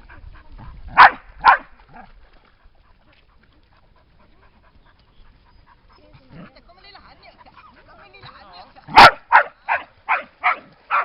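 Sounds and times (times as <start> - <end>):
dog barking: 0.9 - 1.7, 8.9 - 11.0
dog panting: 2.5 - 9.1.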